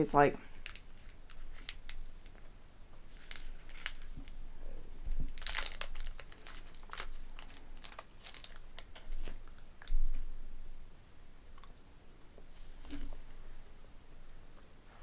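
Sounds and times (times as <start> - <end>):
close-up chewing candy bar: 0.5 - 4.4, 5.2 - 10.0.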